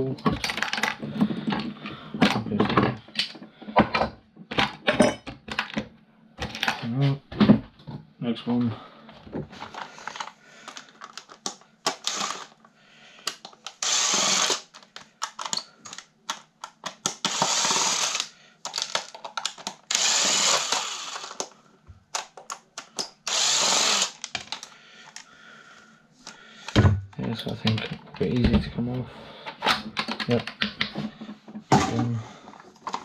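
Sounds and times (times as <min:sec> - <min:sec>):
small parts clicking and clattering: 0:00.2 - 0:04.0, 0:09.6 - 0:25.3, 0:29.5 - 0:33.0
power drill-driver bursts: 0:11.9 - 0:12.6, 0:13.7 - 0:14.8, 0:17.2 - 0:19.0, 0:19.9 - 0:21.4, 0:23.2 - 0:24.3.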